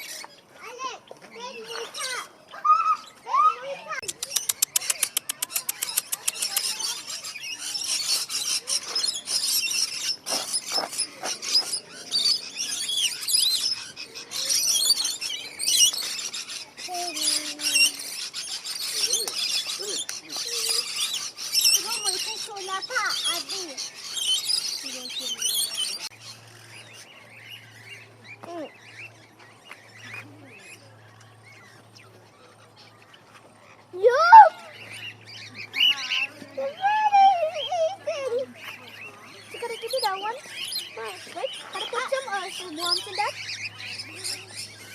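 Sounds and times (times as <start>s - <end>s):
birds chirping and chattering: 0.0s - 44.9s.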